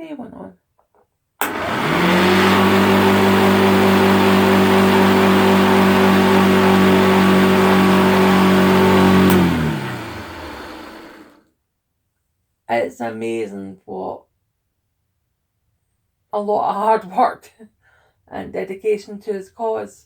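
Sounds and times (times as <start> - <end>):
vacuum switch click: 1.4 - 6.0, 8.6 - 11.3
motor winding down: 1.4 - 11.4
upright vacuum cleaner running: 1.4 - 11.4.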